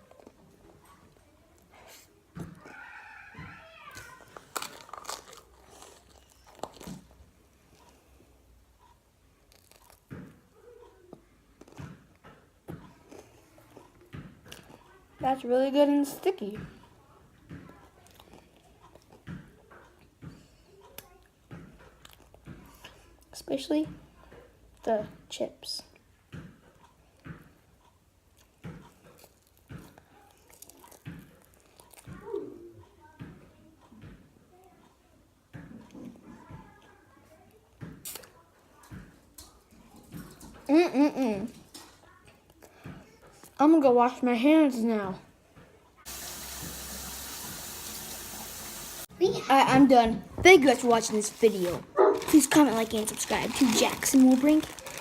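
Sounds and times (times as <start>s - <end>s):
chewing sticky food: 4.0s - 8.0s, 8.8s - 10.1s, 12.8s - 14.9s, 17.8s - 19.3s, 21.8s - 22.5s, 27.8s - 32.3s
crunchy chips being chewed: 4.2s - 7.2s, 9.5s - 10.1s, 29.1s - 32.1s, 52.1s - 55.0s.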